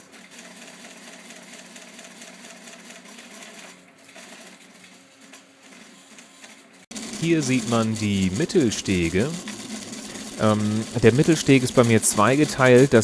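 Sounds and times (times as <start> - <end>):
rapid ticking of print head: 0.0 - 13.0
stepper motors buzzing: 6.9 - 13.0.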